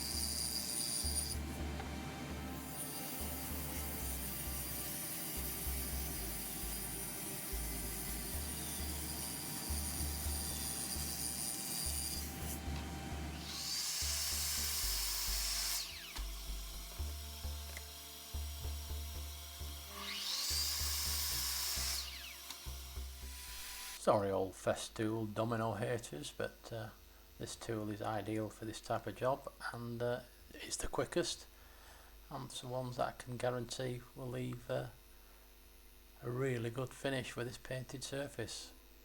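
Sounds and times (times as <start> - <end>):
power joiner running: 0.0 - 24.0.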